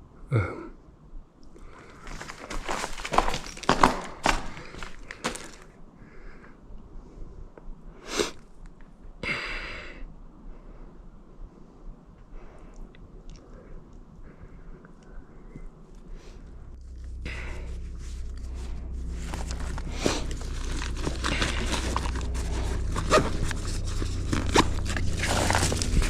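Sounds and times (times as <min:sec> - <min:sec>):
person breathing: 0:01.6 - 0:03.1, 0:04.4 - 0:08.5, 0:09.2 - 0:26.0
footsteps crunching on rough ground: 0:01.7 - 0:05.7, 0:17.1 - 0:26.0
person sniffing: 0:08.1 - 0:08.4.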